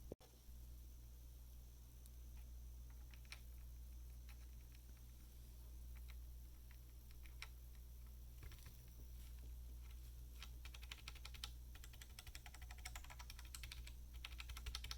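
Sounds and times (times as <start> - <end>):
typing on mechanical keyboard: 10.4 - 14.9.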